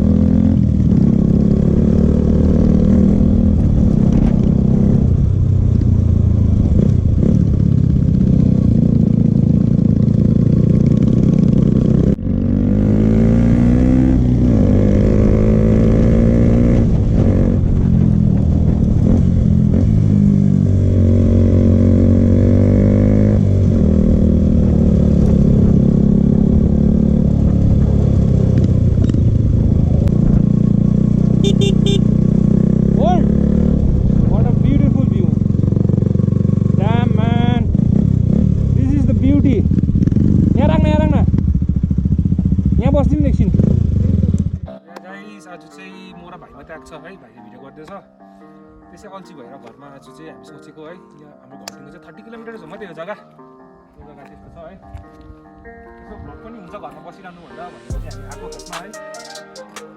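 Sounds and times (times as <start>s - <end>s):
motorcycle engine running: 0.0s - 44.8s, 57.9s - 58.8s.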